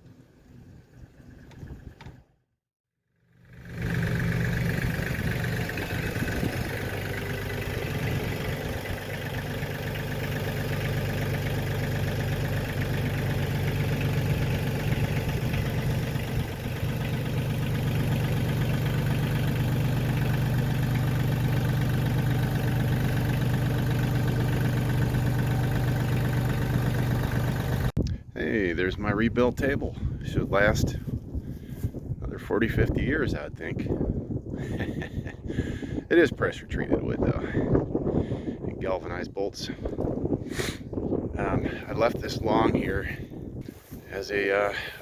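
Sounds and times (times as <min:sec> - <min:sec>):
motor running steadily: 0:03.3 - 0:28.0.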